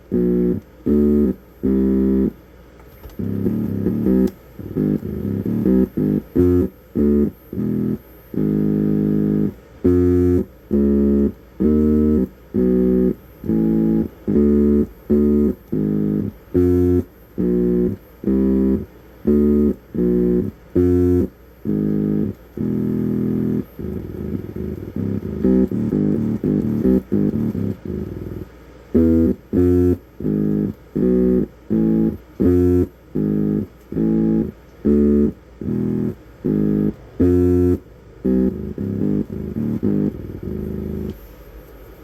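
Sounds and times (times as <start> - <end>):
electronic tone notes: 0.0 - 41.3.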